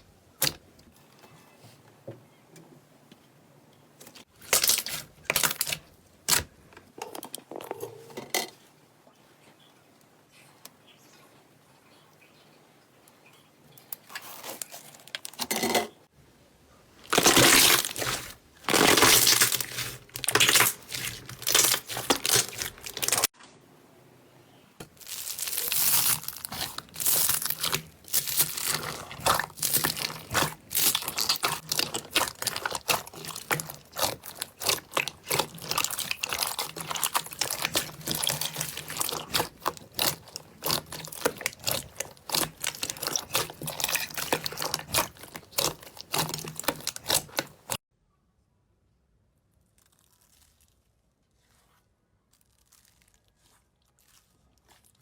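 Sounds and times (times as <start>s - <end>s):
slime crackling: 4.3s - 6.4s, 17.0s - 23.3s, 24.8s - 47.8s.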